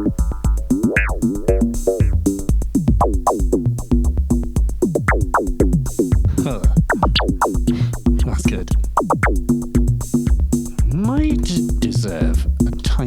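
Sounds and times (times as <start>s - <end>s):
hi-hat ticks: 0.0s - 13.0s
techno kick drum: 0.0s - 13.0s
synth notes swooping down: 5.0s - 7.8s.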